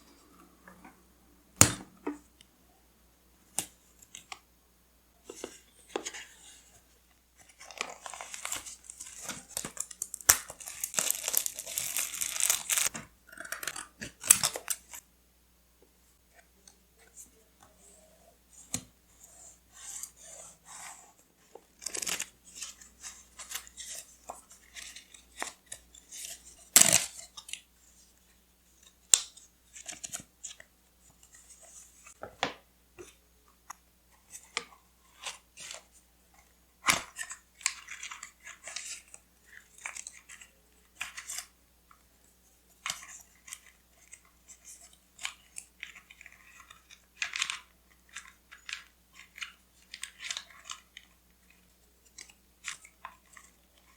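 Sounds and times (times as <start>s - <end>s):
paper rustling and crinkling: 7.4s - 13.0s, 21.4s - 27.6s, 42.7s - 53.9s.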